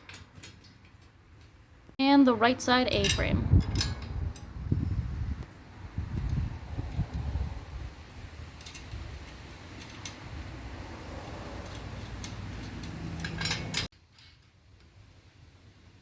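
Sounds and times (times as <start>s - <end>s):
metallic clinks of bolts and nuts: 0.0s - 1.7s, 2.9s - 4.5s, 8.5s - 10.4s, 11.2s - 14.6s.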